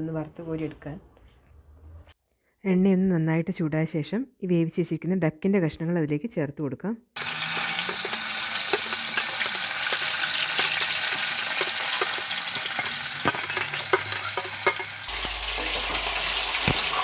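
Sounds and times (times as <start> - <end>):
meat sizzling in hot oil: 7.2 - 17.0
oil pops and crackles: 7.5 - 17.0.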